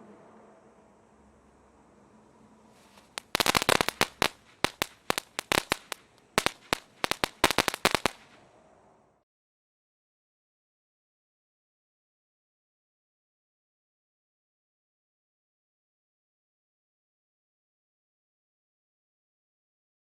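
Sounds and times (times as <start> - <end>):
faint firework hiss: 2.2 - 8.6
firework crackling pops: 2.8 - 8.4.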